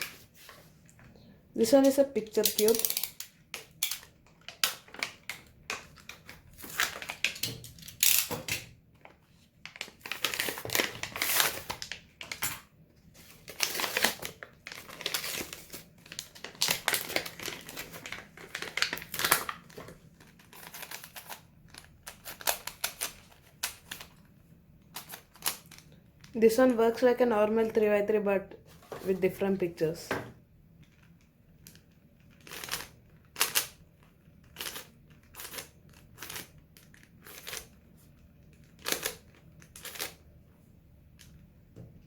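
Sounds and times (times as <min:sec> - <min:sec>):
plastic packaging crinkling: 0:02.3 - 0:08.3, 0:09.0 - 0:12.5, 0:13.2 - 0:26.4.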